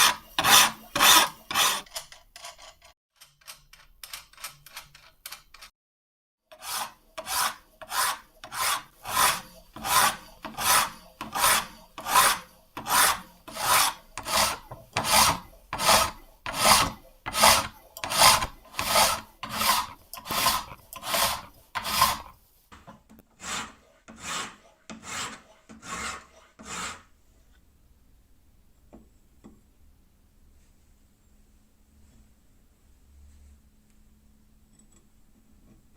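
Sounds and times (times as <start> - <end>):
file rasping on steel blade: 0.0 - 2.9, 6.5 - 22.4, 23.4 - 27.1.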